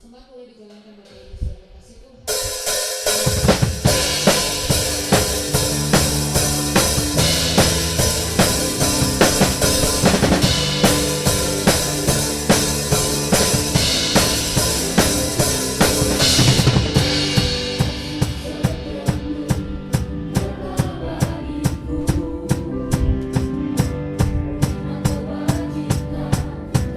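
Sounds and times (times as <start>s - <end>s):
cymbal wash: 2.3s - 19.3s
drum kit kick and snare: 2.3s - 26.9s
band playing worship song: 2.4s - 26.9s.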